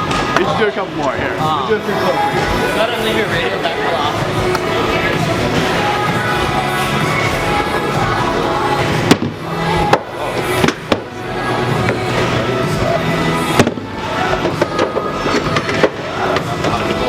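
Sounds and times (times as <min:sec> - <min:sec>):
hard balls knocking: 0:08.0 - 0:17.0.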